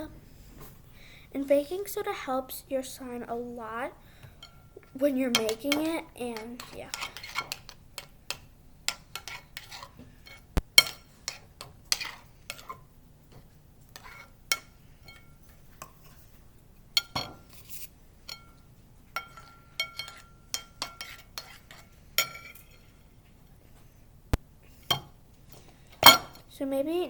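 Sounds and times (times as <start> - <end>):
spoon clinking against a bowl: 14.0 - 15.4, 18.3 - 18.6, 19.2 - 21.6, 22.2 - 22.7, 26.0 - 26.4.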